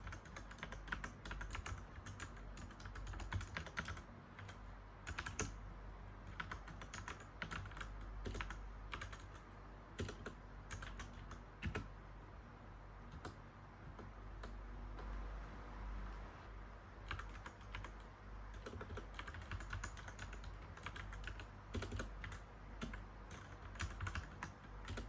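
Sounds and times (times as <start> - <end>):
mechanical keyboard typing: 0.0 - 5.6, 6.2 - 11.9, 13.0 - 15.2, 17.0 - 25.0
faint low hum: 0.0 - 25.0.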